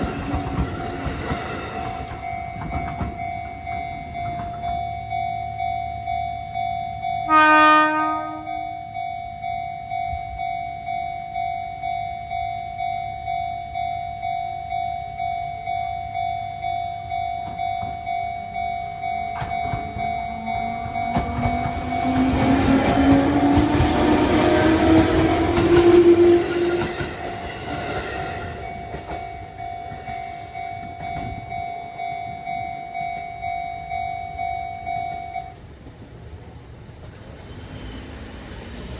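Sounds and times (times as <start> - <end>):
train wheel noise: 0.0 - 6.1, 15.4 - 34.2
train passing: 0.0 - 38.9
level crossing bell dinging: 2.2 - 25.6
rising whine: 19.3 - 27.2.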